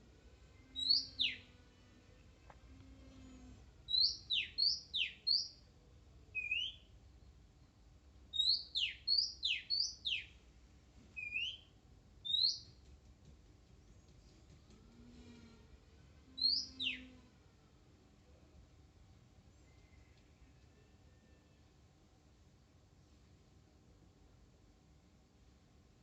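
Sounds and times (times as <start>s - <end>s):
bird singing whistled notes: 0.6s - 1.5s, 3.9s - 5.6s, 6.3s - 6.9s, 8.3s - 10.4s, 11.2s - 12.7s, 16.4s - 17.2s.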